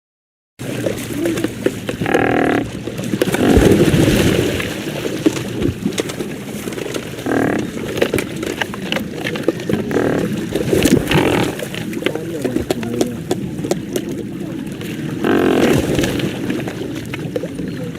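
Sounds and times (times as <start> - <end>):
pelicans grunting calls: 1.1 - 4.8, 6.9 - 13.0, 15.1 - 16.6
low rumbling grunt: 2.0 - 4.2, 7.2 - 7.8.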